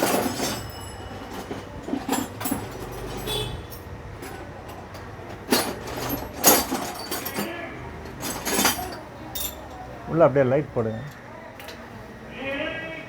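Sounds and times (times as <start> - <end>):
hand tools clinking on metal: 0.0 - 9.8.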